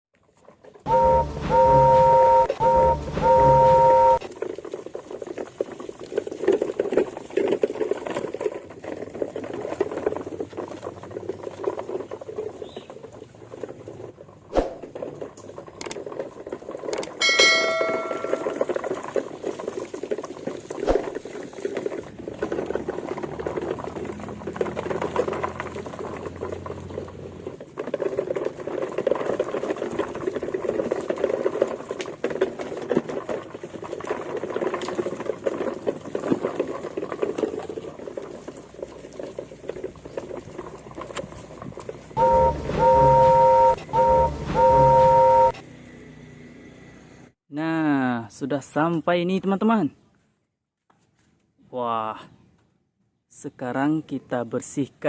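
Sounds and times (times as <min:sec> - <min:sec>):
short high tone: 0:00.9 - 0:04.3, 0:17.2 - 0:18.8, 0:42.2 - 0:45.6.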